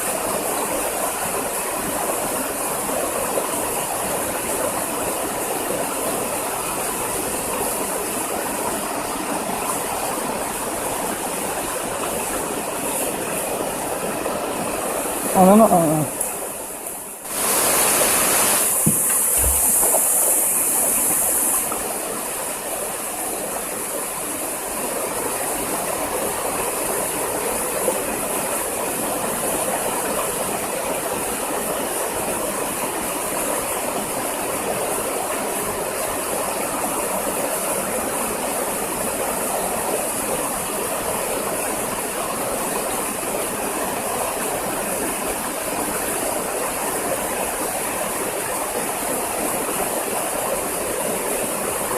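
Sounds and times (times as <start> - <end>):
waterfall rushing: 0.3 - 16.7, 17.3 - 23.0
high hiss: 17.3 - 21.8.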